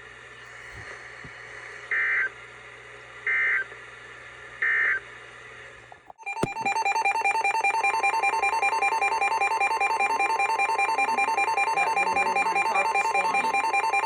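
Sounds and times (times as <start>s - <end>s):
low background hum: 0.0s - 14.0s
music with repeating keyboard pattern: 6.2s - 14.0s
warbling digital bursts: 6.3s - 14.0s.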